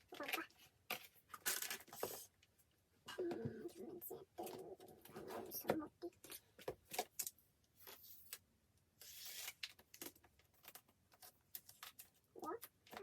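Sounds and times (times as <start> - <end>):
small clicks and taps of packaging: 5.7 - 8.4, 9.5 - 13.0.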